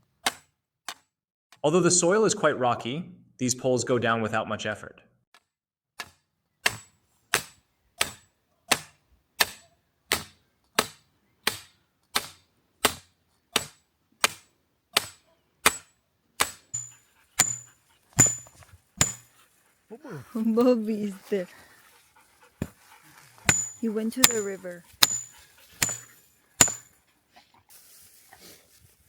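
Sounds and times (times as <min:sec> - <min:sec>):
sledgehammer blows on pole: 0:16.8 - 0:19.3, 0:23.5 - 0:26.9.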